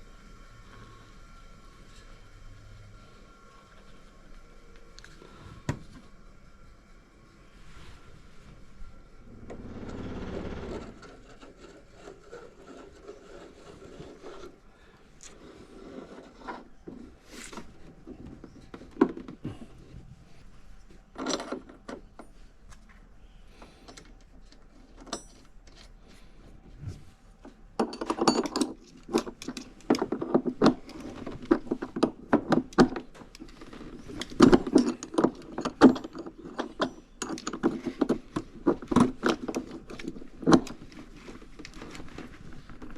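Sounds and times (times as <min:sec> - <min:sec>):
hands scraping and rubbing parts: 0:00.8 - 0:42.9
clicking and rattling of parts: 0:16.0 - 0:20.0, 0:21.1 - 0:26.2, 0:27.4 - 0:42.9.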